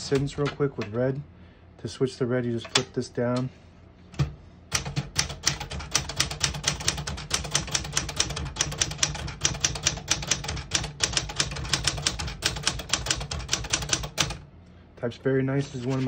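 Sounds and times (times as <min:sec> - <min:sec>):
typewriter typing: 0:04.7 - 0:14.4.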